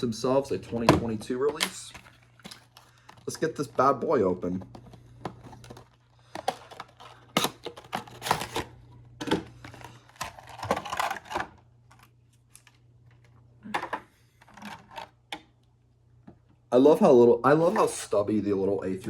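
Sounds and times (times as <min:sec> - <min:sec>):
packaging scraping rustles: 0:01.7 - 0:04.0, 0:04.7 - 0:08.8, 0:09.7 - 0:12.8.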